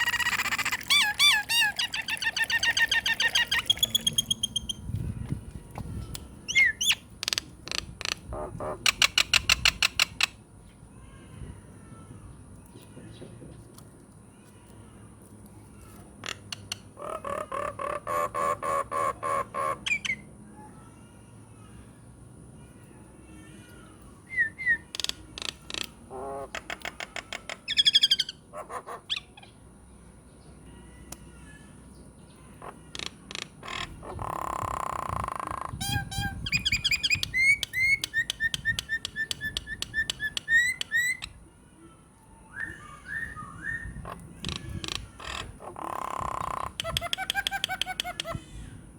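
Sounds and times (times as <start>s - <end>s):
harsh rasping bird call: 0.0s - 4.7s
myna singing mimicked calls: 0.0s - 4.7s.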